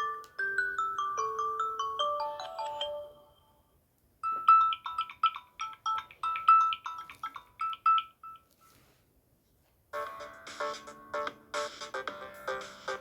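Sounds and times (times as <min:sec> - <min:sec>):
phone ringtone melody: 0:00.0 - 0:08.8, 0:10.0 - 0:13.0.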